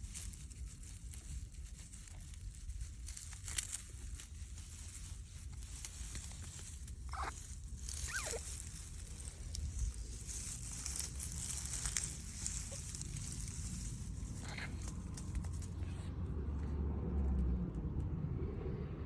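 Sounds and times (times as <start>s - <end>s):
faint rustling hiss: 0.0s - 16.8s
tortoise squeaking: 5.4s - 15.7s.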